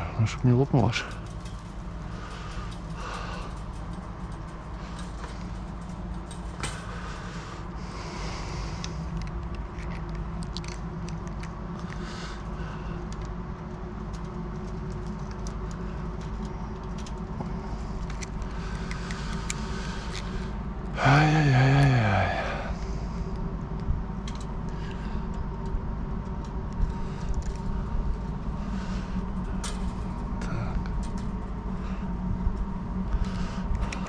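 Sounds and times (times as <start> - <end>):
road traffic hum: 0.0 - 34.0
chain-link wire rattling: 0.2 - 7.8, 26.8 - 31.8.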